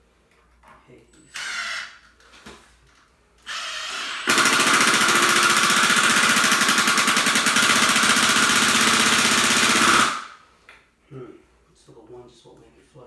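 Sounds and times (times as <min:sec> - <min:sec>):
power tool hammering screw into concrete: 0:01.3 - 0:02.0, 0:03.4 - 0:10.4.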